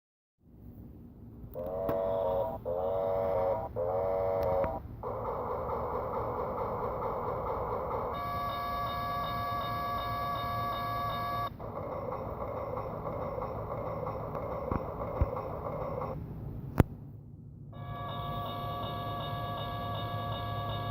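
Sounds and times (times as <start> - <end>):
toy train sound effects: 1.6 - 16.2, 17.8 - 20.9
steady multi-note tone: 17.7 - 20.9.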